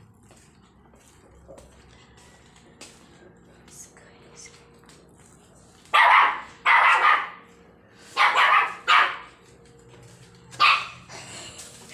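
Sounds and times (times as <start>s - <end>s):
puppy barking: 5.9s - 7.5s, 8.1s - 9.4s, 10.5s - 11.1s.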